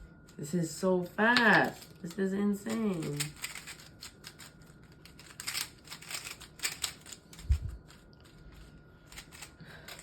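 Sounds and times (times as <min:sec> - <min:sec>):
speedcube layers clicking: 0:05.2 - 0:07.4.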